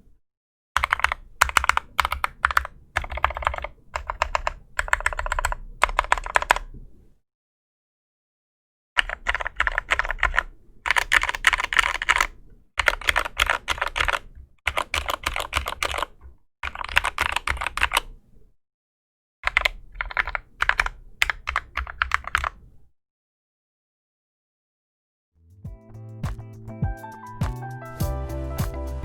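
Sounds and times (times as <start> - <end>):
fast typing on mechanical keyboard: 0.8 - 6.7, 9.0 - 18.2, 19.5 - 22.6.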